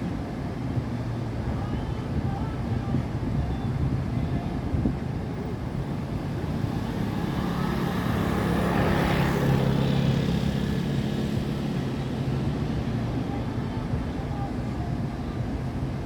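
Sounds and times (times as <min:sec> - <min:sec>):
motor vehicle passing by: 0:06.1 - 0:13.2.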